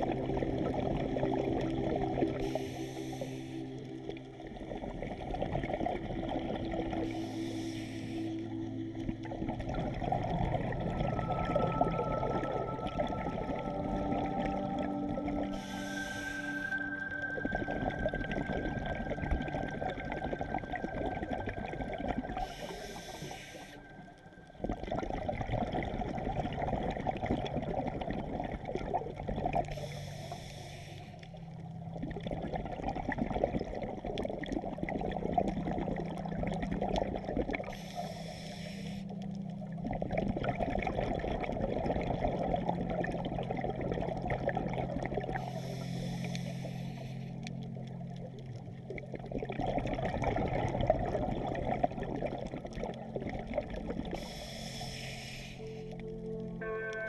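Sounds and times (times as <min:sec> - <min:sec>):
exhaled bubbles burbling: 0:00.0 - 0:07.6, 0:08.4 - 0:30.0, 0:31.7 - 0:38.3, 0:39.2 - 0:46.5, 0:47.4 - 0:54.5
regulator inhalation hiss: 0:02.4 - 0:03.7, 0:07.2 - 0:08.4, 0:15.6 - 0:16.7, 0:22.4 - 0:23.8, 0:29.8 - 0:31.2, 0:37.7 - 0:39.1, 0:45.4 - 0:47.3, 0:54.2 - 0:55.8.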